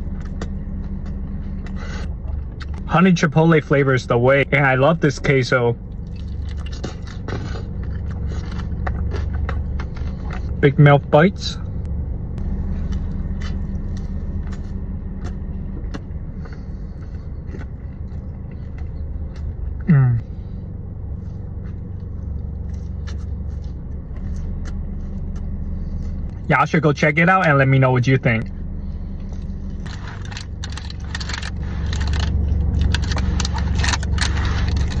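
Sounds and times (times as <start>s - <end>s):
low rumble: 0.0s - 35.0s
steady low hum: 0.0s - 35.0s
chewing crunchy chips: 5.9s - 10.6s, 12.8s - 20.5s, 21.1s - 26.4s, 29.1s - 35.0s.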